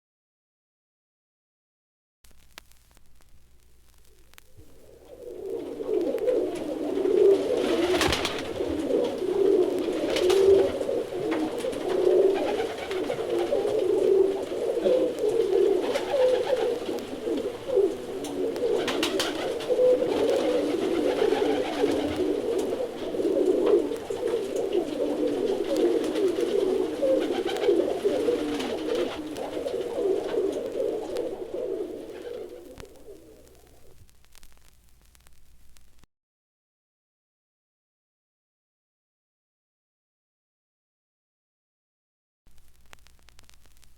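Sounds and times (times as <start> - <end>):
birds warbling: 4.9 - 33.9.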